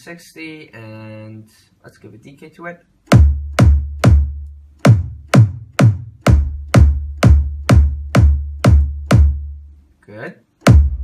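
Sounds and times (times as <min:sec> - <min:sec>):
synthesized kick drum loop: 0:03.0 - 0:09.8, 0:10.6 - 0:11.0.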